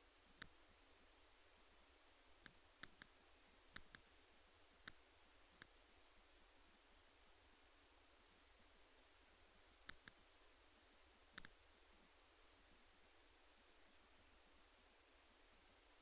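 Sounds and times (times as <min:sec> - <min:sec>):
sharp clicks: 0:02.4 - 0:03.1, 0:03.7 - 0:04.0, 0:09.8 - 0:10.2, 0:11.4 - 0:11.6.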